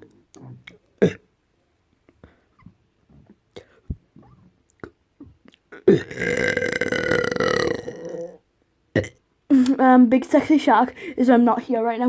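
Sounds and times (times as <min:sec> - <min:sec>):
long loud burp: 0:01.0 - 0:01.3, 0:05.7 - 0:09.2.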